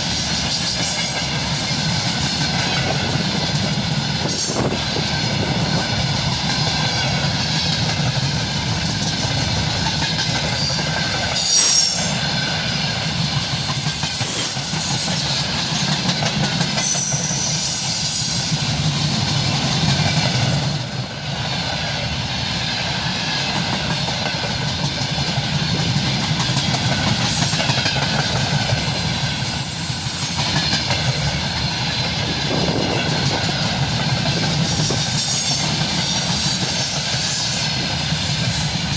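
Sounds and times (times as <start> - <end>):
freight train rolling past: 0.0 - 38.9
high-pitched wheel squeals: 10.5 - 12.2.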